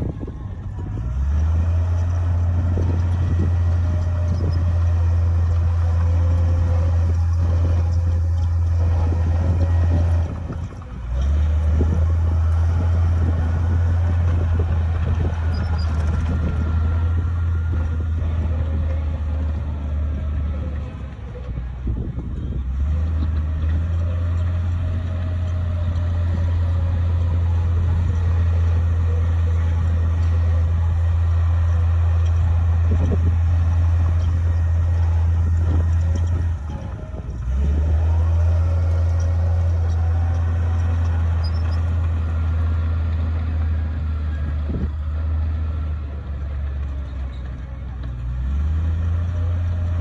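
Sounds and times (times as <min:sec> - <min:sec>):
bulldozer diesel engine running: 0:00.0 - 0:50.0.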